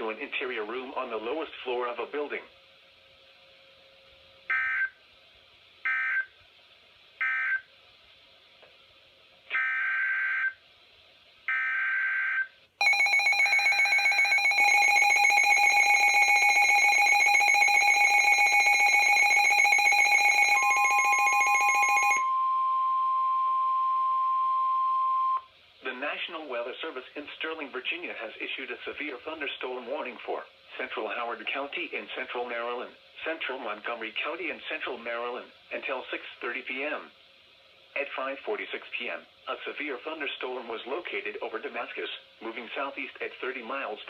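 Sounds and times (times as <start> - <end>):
rapidly pulsing alarm tone: 11.5 - 22.4
steady attention tone: 12.8 - 25.4.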